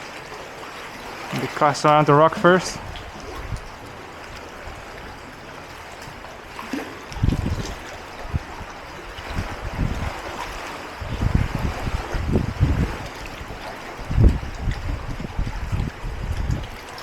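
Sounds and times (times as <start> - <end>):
sea water washing against rocks: 0.0 - 17.0.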